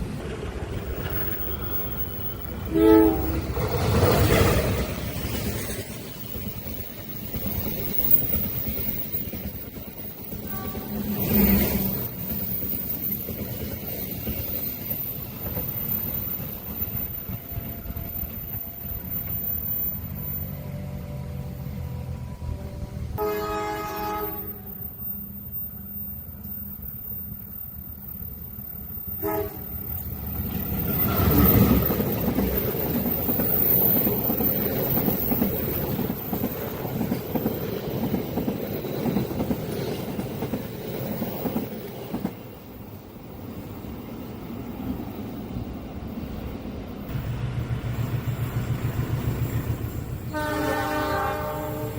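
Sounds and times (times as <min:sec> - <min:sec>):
train rumbling: 0:00.0 - 0:51.9
train horn blast: 0:02.7 - 0:03.5, 0:10.4 - 0:11.6, 0:20.6 - 0:24.7, 0:29.2 - 0:29.7, 0:50.3 - 0:51.9.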